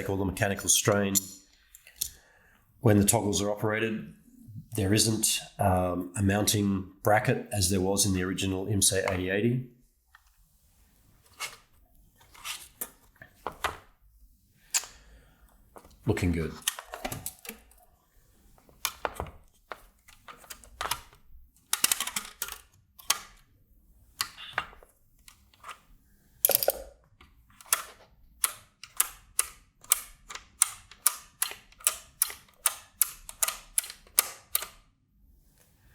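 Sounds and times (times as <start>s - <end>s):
toggle switches clicking: 27.6s - 34.8s.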